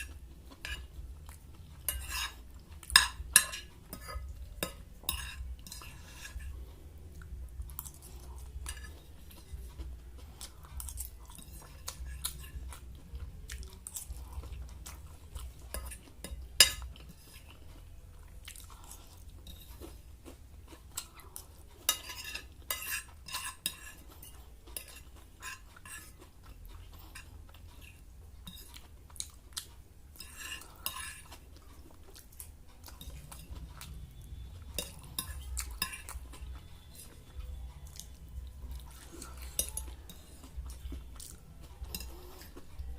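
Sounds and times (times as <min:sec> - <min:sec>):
person chewing and crunching: 0:00.0 - 0:42.9
cutlery clinking on plate: 0:01.9 - 0:06.5.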